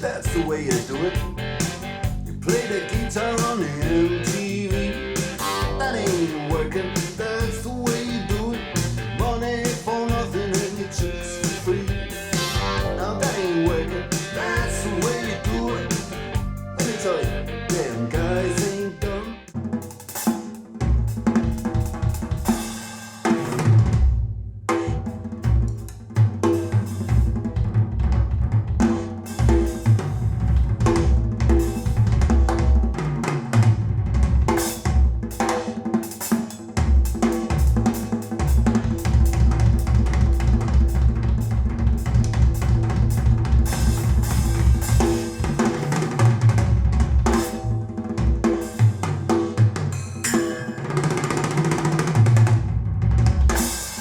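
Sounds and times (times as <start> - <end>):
deep bass: 0.0 - 19.4, 38.8 - 45.8
music over loudspeakers: 0.0 - 19.5
drum kit: 0.0 - 54.0.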